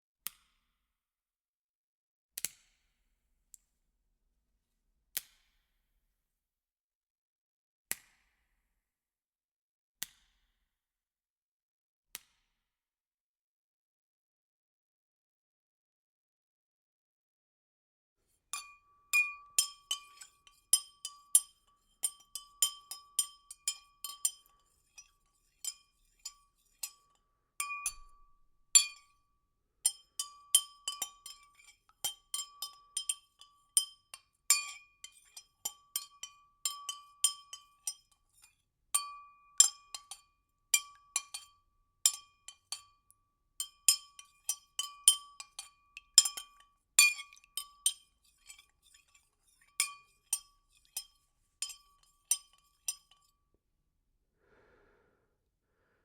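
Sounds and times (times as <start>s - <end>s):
light ringing clinks: 18.6s - 29.1s, 29.9s - 40.2s, 43.6s - 53.3s.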